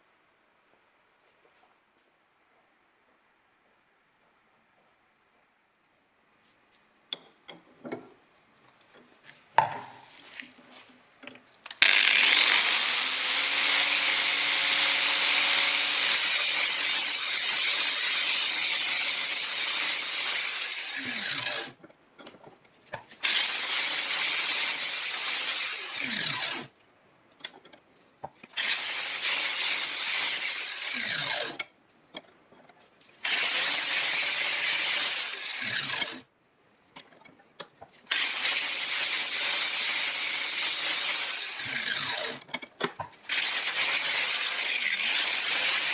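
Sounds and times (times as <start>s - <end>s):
power tool abrading: 11.7s - 21.8s, 23.1s - 26.7s, 28.5s - 31.7s, 33.2s - 36.3s, 38.1s - 42.6s, 43.2s - 45.9s.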